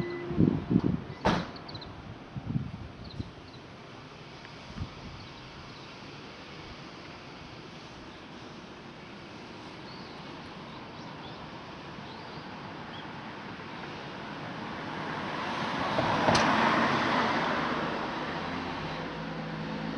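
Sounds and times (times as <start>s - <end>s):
car passing: 13.6s - 19.9s.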